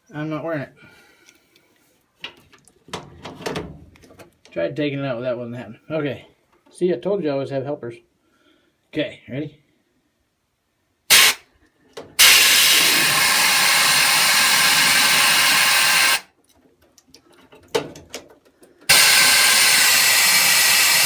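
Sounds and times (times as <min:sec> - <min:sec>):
compressed air hissing: 0:11.1 - 0:11.4, 0:12.2 - 0:16.3, 0:18.9 - 0:21.0.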